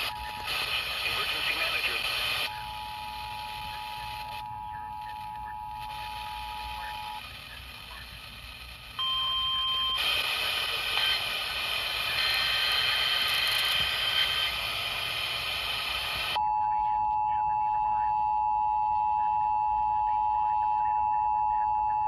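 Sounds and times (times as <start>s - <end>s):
loud steady hiss: 9.9s - 16.4s.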